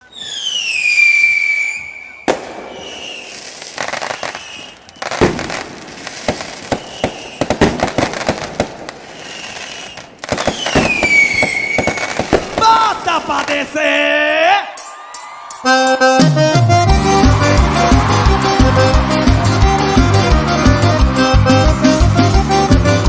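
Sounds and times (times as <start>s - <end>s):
firework whistle falling: 0.0s - 5.8s, 6.6s - 7.6s, 9.0s - 12.2s
fireworks cracking and popping: 0.2s - 14.0s
firework bang: 1.2s - 9.0s, 9.6s - 13.2s.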